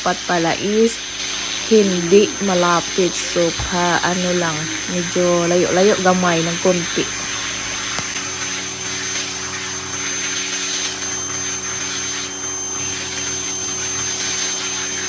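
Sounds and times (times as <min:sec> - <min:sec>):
pressure washer motor hum: 0:00.0 - 0:15.0
water jet hissing: 0:00.0 - 0:15.0.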